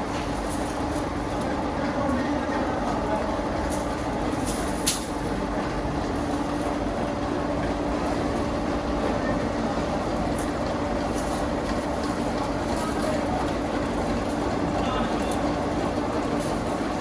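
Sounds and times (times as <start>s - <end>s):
factory machinery humming: 0.0s - 17.0s.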